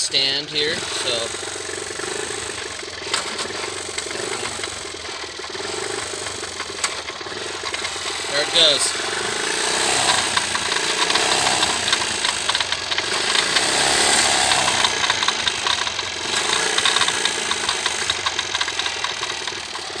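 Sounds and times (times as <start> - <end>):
small engine running: 0.0 - 20.0
clattering knocking in crankcase: 1.8 - 20.0.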